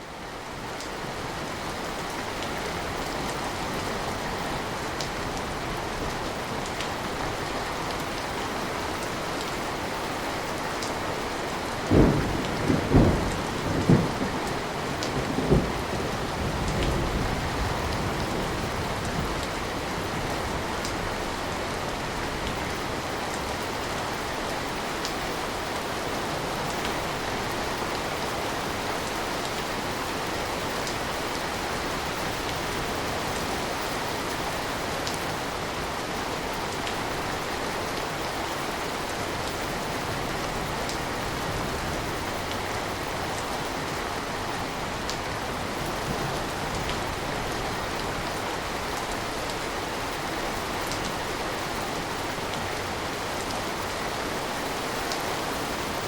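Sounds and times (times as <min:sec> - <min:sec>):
steady rain: 0:00.0 - 0:56.0
thunder cracks and rumble: 0:11.9 - 0:19.4.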